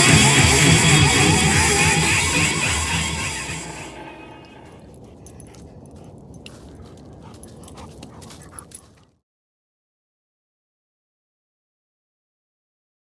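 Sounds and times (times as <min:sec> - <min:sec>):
background music: 0:00.0 - 0:04.8
low steady rustle: 0:04.4 - 0:09.1
small dog sounds: 0:04.6 - 0:09.1.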